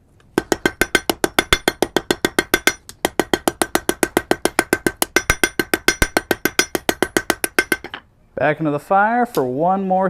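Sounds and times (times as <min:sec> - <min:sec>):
hammer striking iron on anvil: 0:00.4 - 0:08.0.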